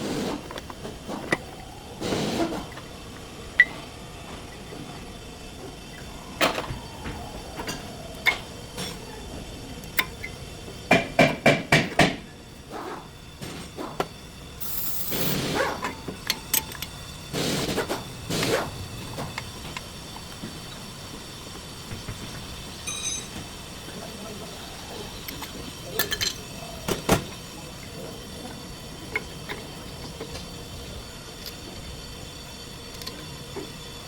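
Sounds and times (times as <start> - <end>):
hiss: 0.0 - 34.0
metal tools knocking and clinking: 22.8 - 23.5.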